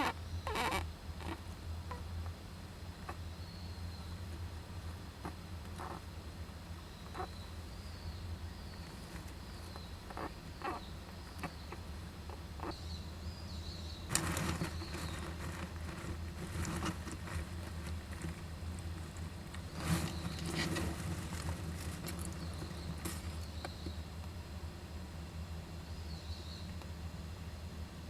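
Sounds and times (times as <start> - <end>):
steady low hum: 0.0 - 28.0
scratching and rustling in wooden box: 14.1 - 24.0.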